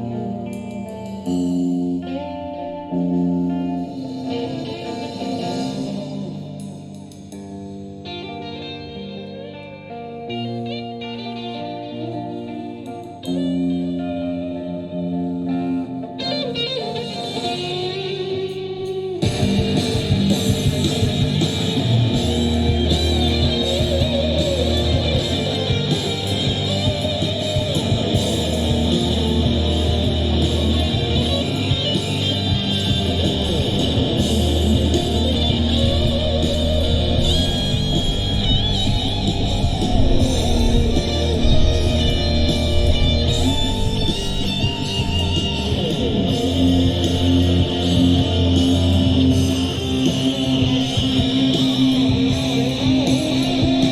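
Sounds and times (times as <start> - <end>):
electric guitar: 0.0 - 53.9
bass notes: 19.2 - 53.9.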